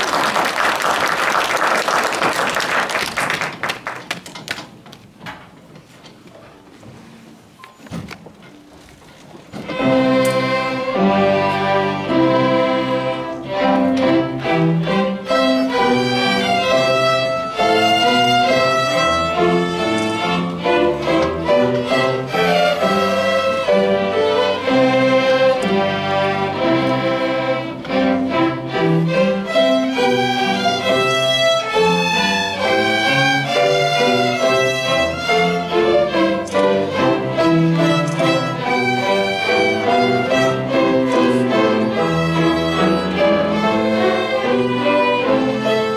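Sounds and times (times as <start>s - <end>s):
lower string parts: 9.5s - 45.9s
violin melody: 9.5s - 45.9s.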